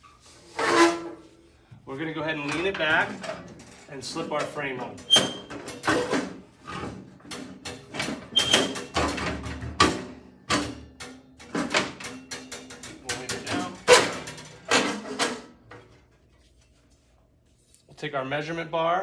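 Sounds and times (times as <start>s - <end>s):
sheet metal clanking and scraping: 0.3s - 1.3s, 2.3s - 15.9s.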